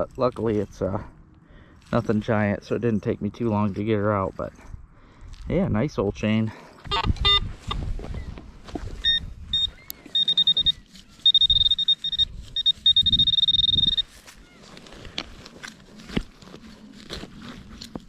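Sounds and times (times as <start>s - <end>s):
metal detector beeping: 6.9s - 8.3s, 9.0s - 14.6s
crunches and clicks: 9.0s - 18.0s.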